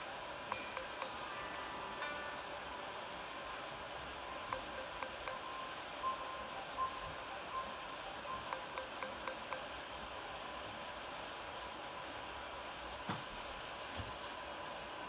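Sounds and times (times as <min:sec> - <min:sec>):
phone ringtone beeps: 0:00.5 - 0:01.3, 0:04.5 - 0:06.3, 0:08.4 - 0:09.8.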